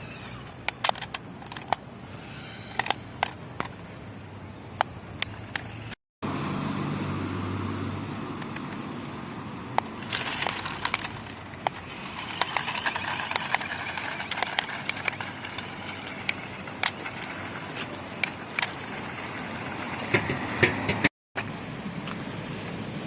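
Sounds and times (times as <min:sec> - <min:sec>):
small electric motor whining: 0:10.0 - 0:20.2.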